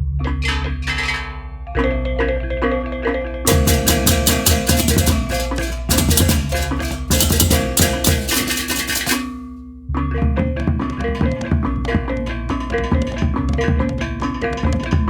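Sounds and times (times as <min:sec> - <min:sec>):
cymbals crashing: 0:03.5 - 0:09.4
drums: 0:03.5 - 0:09.5, 0:10.2 - 0:15.0.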